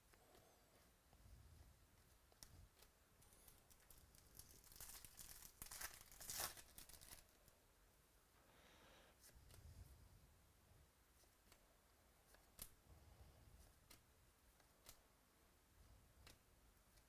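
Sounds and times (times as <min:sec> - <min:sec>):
foil wrapper crinkling and tearing: 0:03.4 - 0:07.4.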